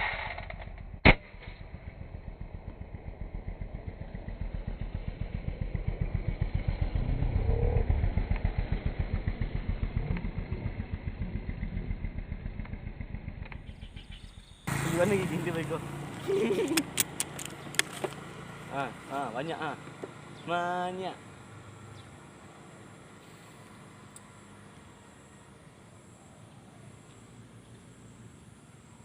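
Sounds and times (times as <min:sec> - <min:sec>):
sharp crack: 0:00.0 - 0:03.0, 0:16.6 - 0:18.2
motorcycle engine putter: 0:16.0 - 0:18.3.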